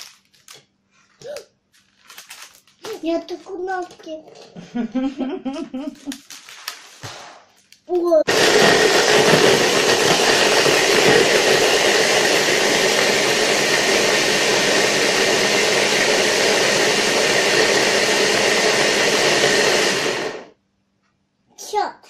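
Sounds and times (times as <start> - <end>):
electric blender running: 8.3 - 20.5.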